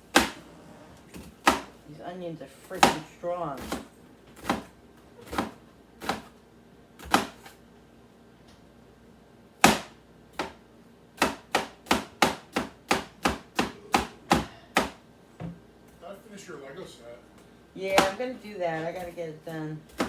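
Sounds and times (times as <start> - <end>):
knife chopping on cutting board: 0.1 - 0.4, 1.1 - 1.8, 2.7 - 6.4, 7.0 - 7.6, 9.6 - 10.6, 11.2 - 15.6, 17.9 - 18.2.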